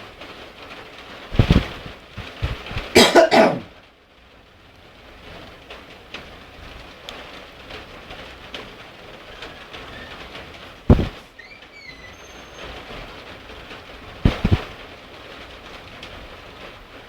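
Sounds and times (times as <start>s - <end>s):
steady rain hissing: 0.0s - 17.0s
person coughing: 3.0s - 3.7s.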